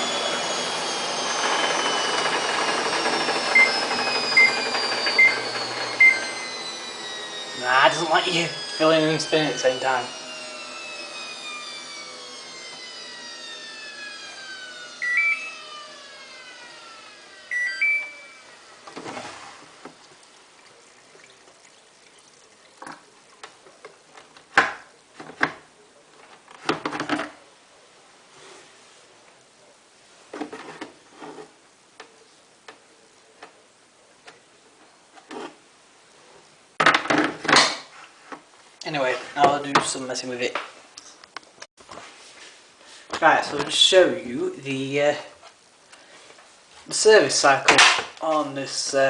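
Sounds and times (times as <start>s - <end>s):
washing machine drum spinning down: 0.0s - 8.8s
control panel beeping: 15.0s - 15.5s, 17.5s - 18.4s.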